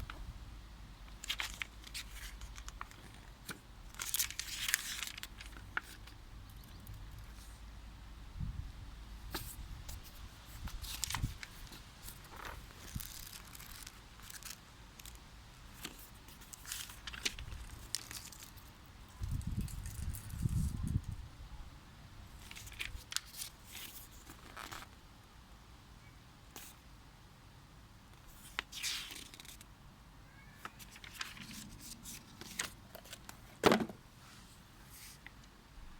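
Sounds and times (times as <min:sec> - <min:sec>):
packaging rustling: 0:30.7 - 0:34.0.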